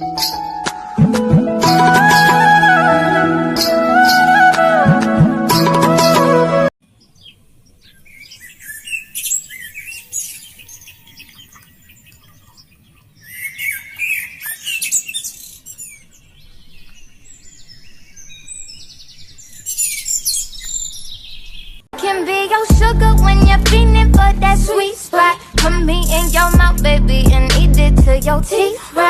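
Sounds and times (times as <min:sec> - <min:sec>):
music: 0:00.0 - 0:06.7, 0:22.0 - 0:29.0
songbirds chirping and singing: 0:06.9 - 0:21.9.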